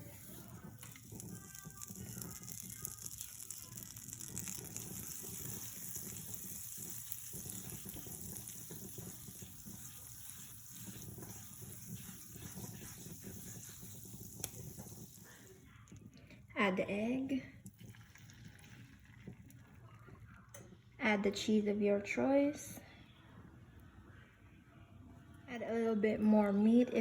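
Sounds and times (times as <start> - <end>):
butter sizzling in a frying pan: 0.0 - 15.6.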